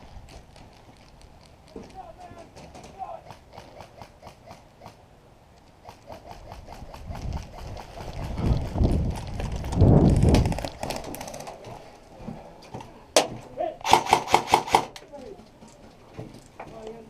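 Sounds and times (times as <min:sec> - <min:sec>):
footsteps: 0:00.0 - 0:04.5, 0:05.6 - 0:13.7, 0:15.0 - 0:17.0
low rumbling movement noise: 0:06.6 - 0:13.2
airsoft gunfire cracks: 0:13.8 - 0:14.9.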